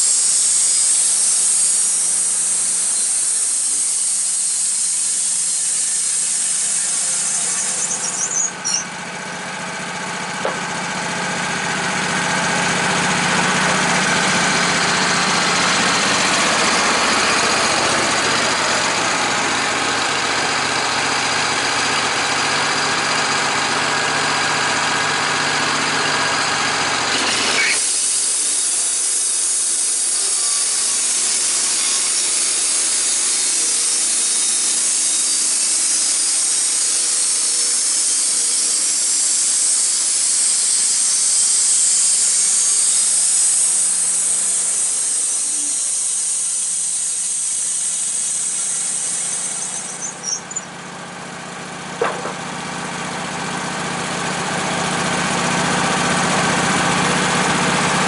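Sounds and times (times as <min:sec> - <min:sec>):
loud steady hiss: 0:00.0 - 0:08.8, 0:10.0 - 0:22.2, 0:25.6 - 0:50.4
motor low hum: 0:06.6 - 0:22.7, 0:48.9 - 0:58.0.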